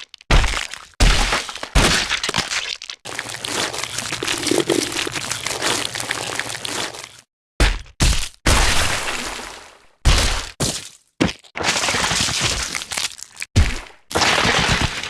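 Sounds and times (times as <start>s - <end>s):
bones cracking and crunching: 0.0s - 7.2s, 12.6s - 13.5s.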